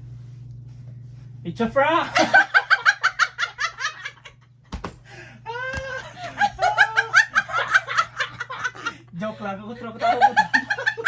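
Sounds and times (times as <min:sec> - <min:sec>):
hearty laughter: 0:05.9 - 0:09.1, 0:09.9 - 0:11.0.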